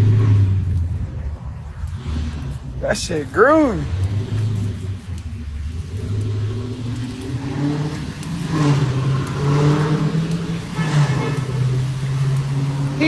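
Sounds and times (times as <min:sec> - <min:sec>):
engine accelerating: 0:00.0 - 0:13.0.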